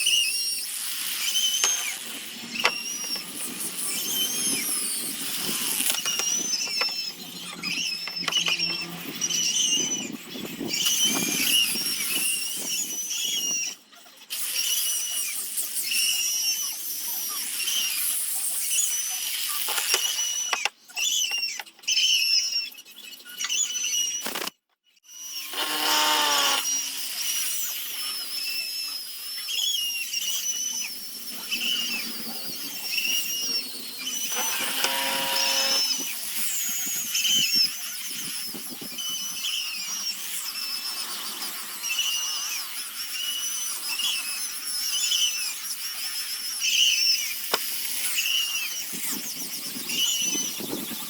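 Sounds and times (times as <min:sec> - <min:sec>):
power sander whining on wood: 0:01.1 - 0:12.5, 0:25.4 - 0:28.1, 0:31.3 - 0:45.2.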